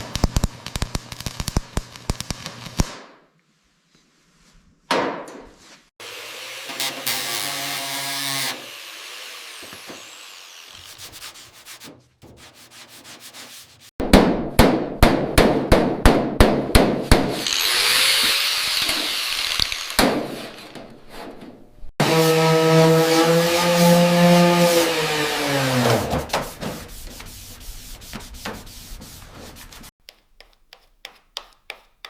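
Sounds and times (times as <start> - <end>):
scraping and sanding: 6.8 - 14.0, 22.8 - 32.0
rapid sharp hammering taps: 30.0 - 32.0.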